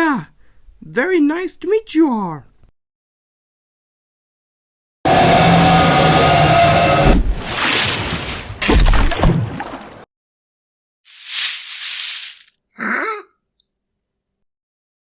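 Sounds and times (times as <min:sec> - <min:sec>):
hiss-like burst: 0:11.1 - 0:12.5.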